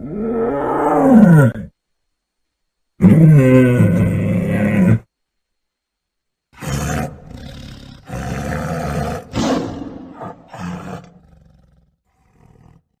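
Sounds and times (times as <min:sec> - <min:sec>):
tiger roaring and growling: 0:00.0 - 0:01.8, 0:03.0 - 0:05.1, 0:06.6 - 0:13.0.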